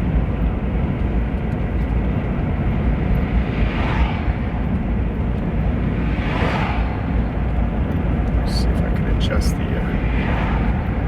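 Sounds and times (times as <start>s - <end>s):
car road and engine rumble: 0.0s - 11.0s
car swishing past: 3.2s - 4.8s, 5.6s - 8.7s, 9.7s - 11.0s.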